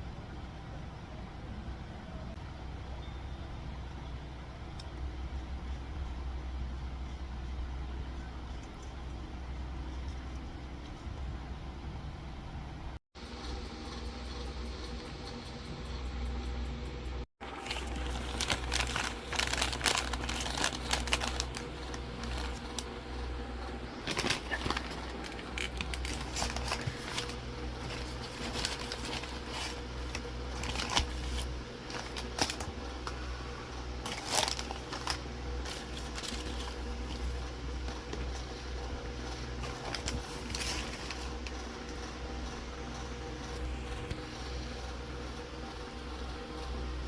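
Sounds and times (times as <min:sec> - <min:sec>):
low hum: 0:00.0 - 0:47.0
crinkling and light clicks: 0:17.5 - 0:45.1.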